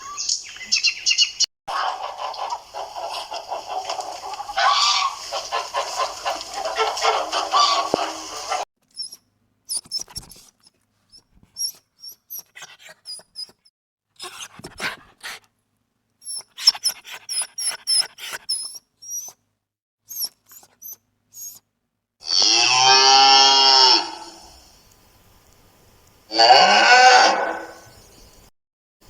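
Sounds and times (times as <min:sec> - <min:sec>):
high squeaky chirps: 0:08.9 - 0:13.7, 0:16.2 - 0:19.4, 0:20.1 - 0:21.6
cow mooing: 0:22.2 - 0:24.3, 0:26.3 - 0:27.7
faint clicks: 0:24.9 - 0:26.2.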